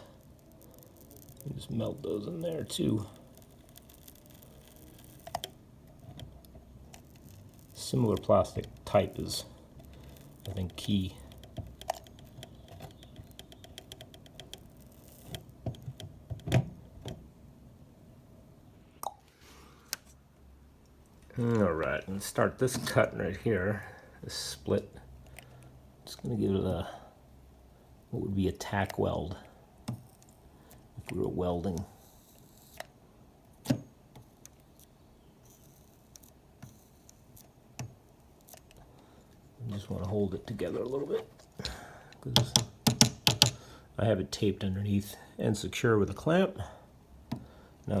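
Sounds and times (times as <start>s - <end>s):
small hard objects clicking: 0.0s - 16.2s.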